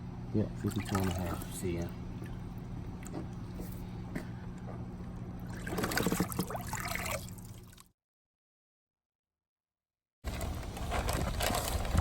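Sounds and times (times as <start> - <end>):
steady low hum: 0.0 - 7.8
water splashing and sloshing: 5.1 - 7.9.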